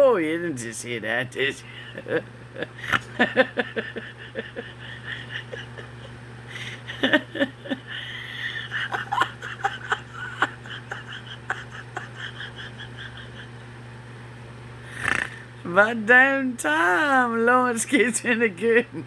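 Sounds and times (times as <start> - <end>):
steady low hum: 0.0 - 19.0
man laughing: 1.4 - 13.8.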